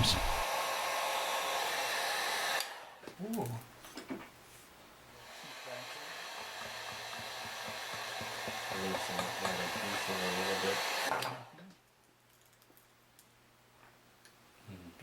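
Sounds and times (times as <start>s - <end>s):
heat gun blowing air: 0.0s - 3.0s, 5.2s - 11.1s.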